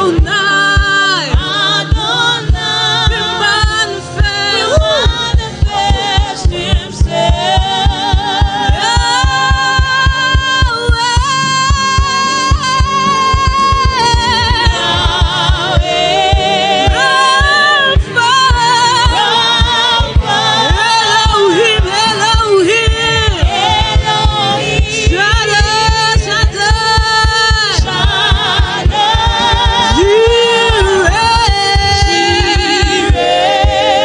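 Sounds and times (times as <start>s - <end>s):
steady low beat: 0.0s - 34.0s
voices singing held notes: 0.0s - 34.0s.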